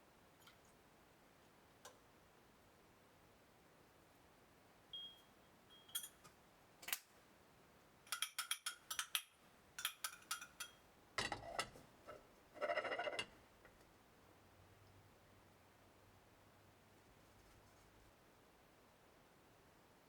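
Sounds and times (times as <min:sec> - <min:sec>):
utensils and dishes clinking: 0:05.9 - 0:06.3, 0:08.1 - 0:11.8.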